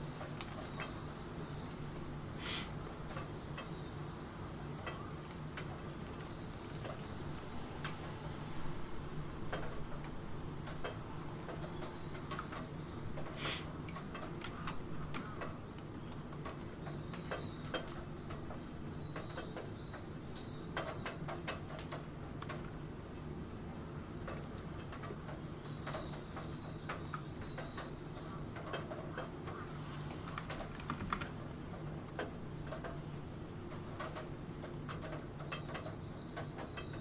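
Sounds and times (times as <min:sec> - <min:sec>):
steady rain: 0:00.0 - 0:37.0
computer keyboard typing: 0:30.3 - 0:31.5.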